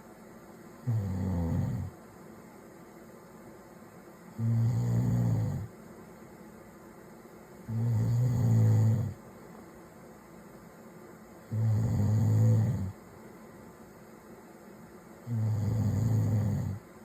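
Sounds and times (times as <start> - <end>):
man snoring: 0.8 - 1.9, 4.4 - 5.7, 7.7 - 9.2, 11.5 - 13.0, 15.2 - 16.8.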